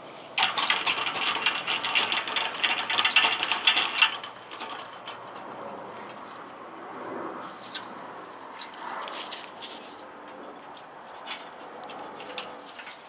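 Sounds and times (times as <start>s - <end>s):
rapid mechanical clicking rattle: 0.4s - 6.4s.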